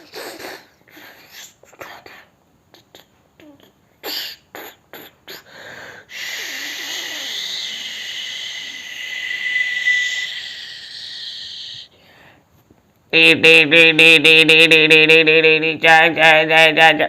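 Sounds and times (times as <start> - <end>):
man imitating a train: 6.2 - 11.8, 13.2 - 17.0.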